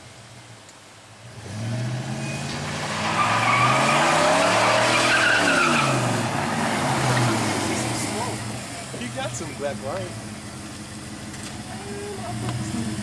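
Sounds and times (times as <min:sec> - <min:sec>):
engine revving hard: 0:01.3 - 0:09.4
tyres squealing: 0:02.2 - 0:10.3.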